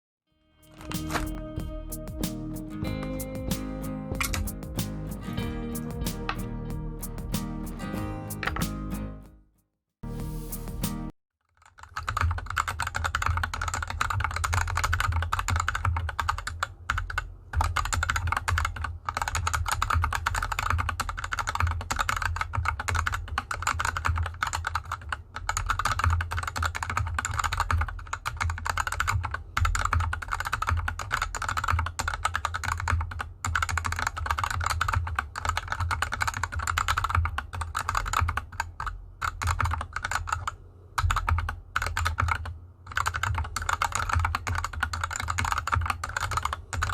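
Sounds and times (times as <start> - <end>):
fast mechanical keyboard typing: 11.5 - 46.9.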